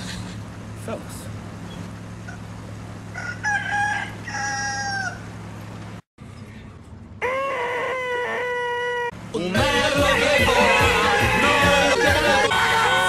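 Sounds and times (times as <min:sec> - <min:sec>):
rooster crowing: 0:03.1 - 0:05.3, 0:07.2 - 0:09.2.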